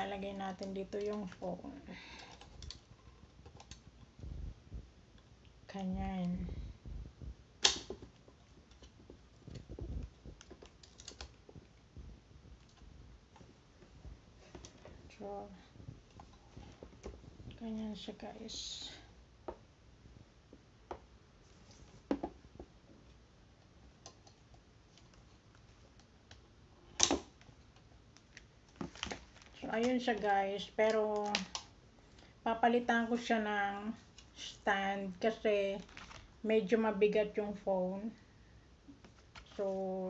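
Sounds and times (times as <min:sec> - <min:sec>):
plastic parts clicking: 0:10.3 - 0:11.4.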